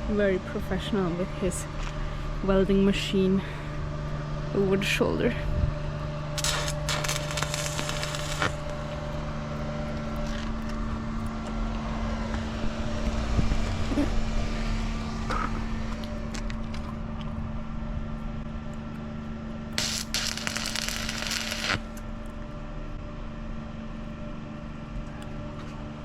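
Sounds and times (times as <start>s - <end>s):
low rumble: 0.0s - 24.8s
welding machine humming: 5.8s - 26.0s.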